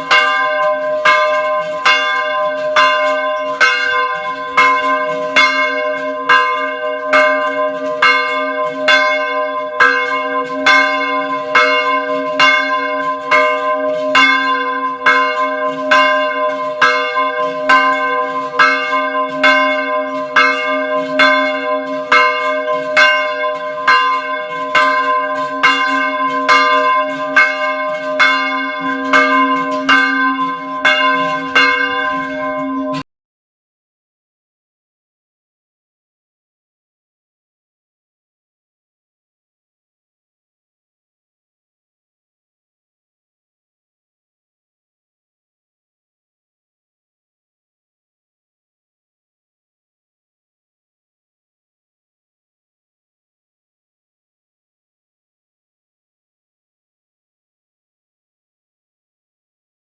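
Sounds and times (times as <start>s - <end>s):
deep bell striking: 0.0s - 33.1s.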